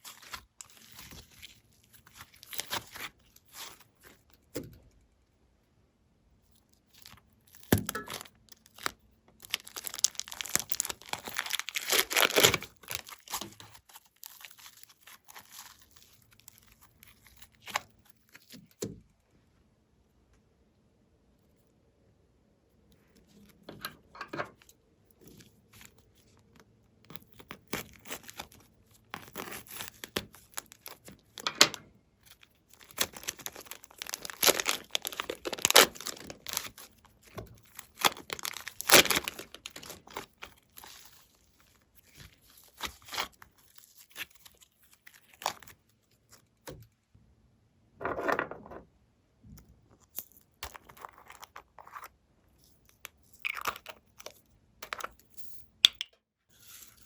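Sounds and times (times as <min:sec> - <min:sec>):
slime crackling and tearing: 0:00.0 - 0:03.9, 0:08.0 - 0:18.5, 0:27.2 - 0:31.5, 0:32.3 - 0:45.8.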